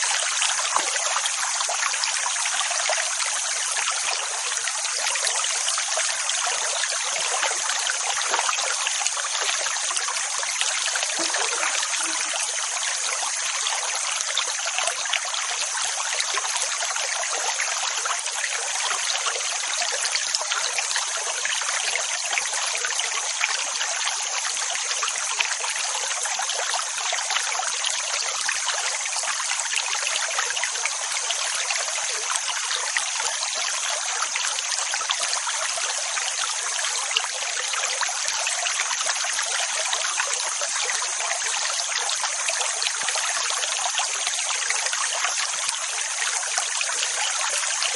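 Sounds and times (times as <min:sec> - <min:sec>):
rushing water hiss: 0:00.0 - 0:26.2.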